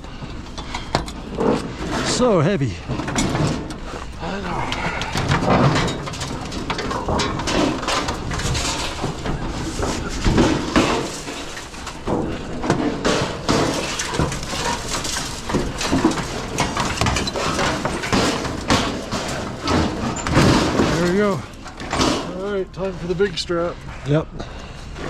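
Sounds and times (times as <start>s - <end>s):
metal clanks and scrapes: 0.2s - 25.0s
men grunting: 4.2s - 5.4s.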